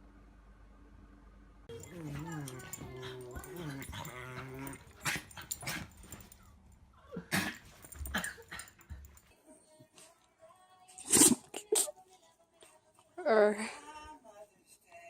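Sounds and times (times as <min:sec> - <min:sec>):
dog whining: 0:01.7 - 0:06.3.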